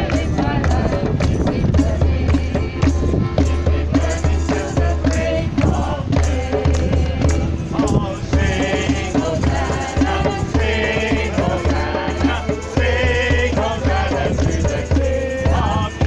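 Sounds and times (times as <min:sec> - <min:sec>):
rattling hand percussion: 0:00.0 - 0:16.0
upbeat worship music: 0:00.0 - 0:16.0.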